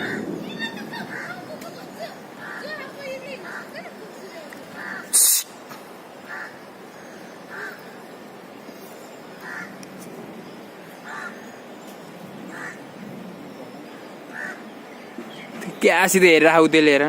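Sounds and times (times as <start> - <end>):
bird harsh calls: 0.0 - 9.8, 10.8 - 11.8, 12.4 - 13.0, 14.2 - 15.8
steady background hiss: 0.0 - 17.0.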